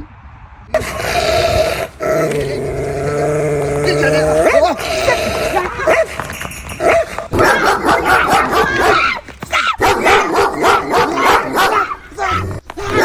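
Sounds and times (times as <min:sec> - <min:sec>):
dog barking rapidly: 0:04.0 - 0:06.2, 0:06.8 - 0:13.0.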